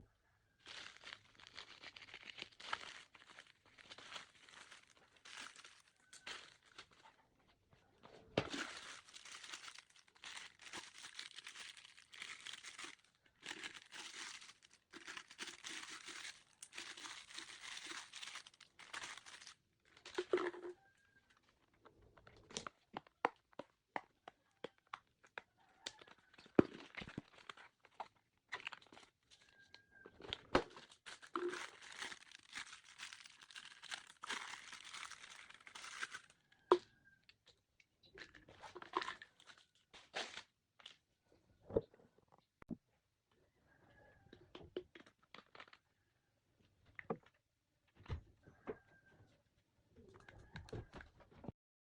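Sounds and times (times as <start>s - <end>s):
packaging tearing and crinkling: 0.7s - 7.0s, 8.4s - 19.6s, 30.8s - 36.4s.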